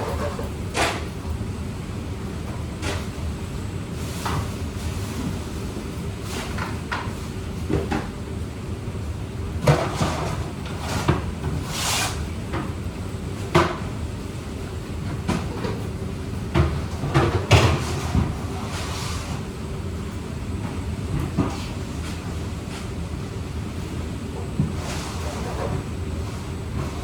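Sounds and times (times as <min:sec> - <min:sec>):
kitchen knocks and clatters: 0:13.5 - 0:13.9, 0:16.5 - 0:18.8.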